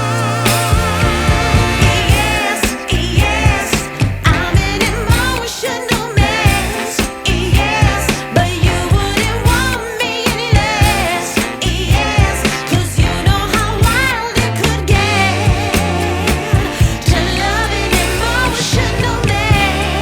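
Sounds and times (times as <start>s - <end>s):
music with a steady beat: 0.0s - 20.0s
person singing with vibrato: 0.0s - 20.0s.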